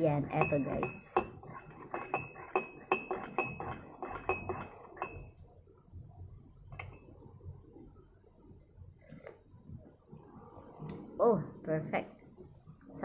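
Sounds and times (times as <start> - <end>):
spoon clinking against glass: 0.4 - 5.3.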